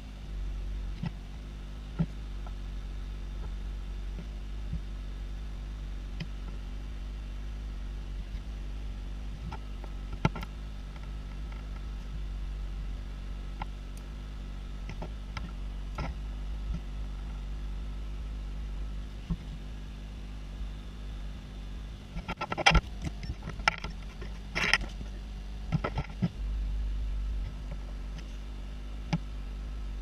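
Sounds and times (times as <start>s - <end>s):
low hum: 0.0s - 30.0s
sharp clicks and knocks: 9.4s - 12.2s, 14.8s - 17.4s, 22.1s - 26.4s.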